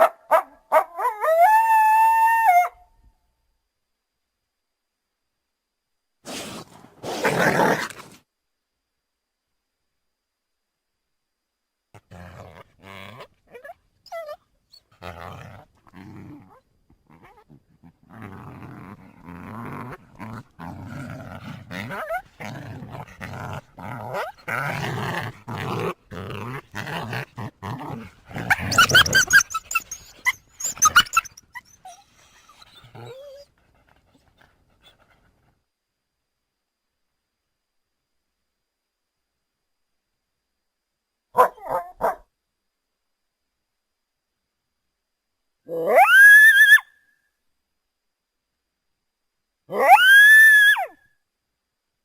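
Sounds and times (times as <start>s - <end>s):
coyotes calling: 28.3s - 32.5s.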